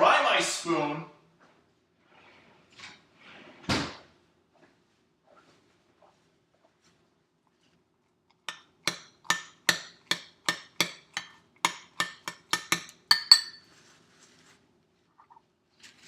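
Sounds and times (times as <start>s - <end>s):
kitchenware clinking: 8.5s - 13.8s.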